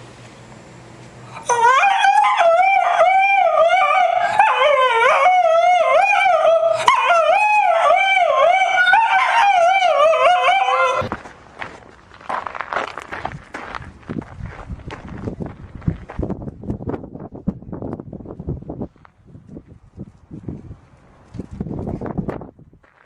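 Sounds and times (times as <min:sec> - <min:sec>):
dog howling: 0:01.4 - 0:11.2.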